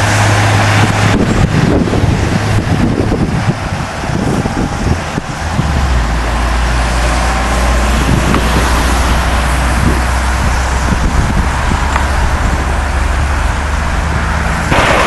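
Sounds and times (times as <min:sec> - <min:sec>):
low engine drone: 0:00.0 - 0:15.0
road and wind noise: 0:00.0 - 0:15.0.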